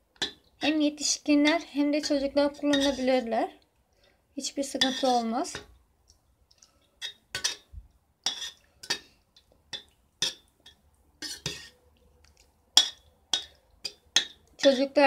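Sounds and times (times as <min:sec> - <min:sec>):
spoon clinking against dish: 0:12.8 - 0:14.8.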